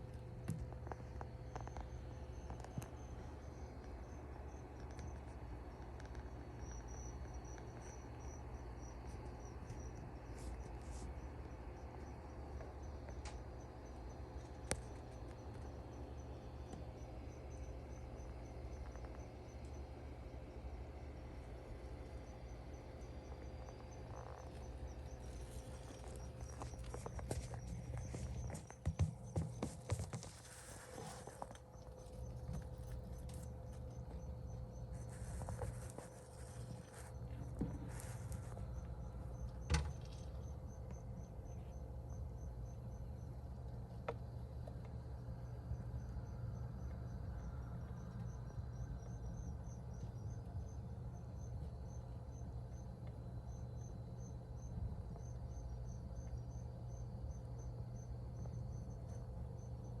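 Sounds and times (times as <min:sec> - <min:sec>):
low steady hum: 0:00.0 - 1:00.0
high insect chirping: 0:00.5 - 0:43.6.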